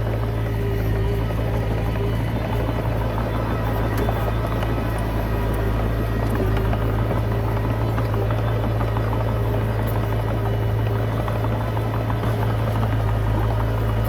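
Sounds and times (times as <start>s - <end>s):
bulldozer diesel engine drone: 0.0s - 14.0s.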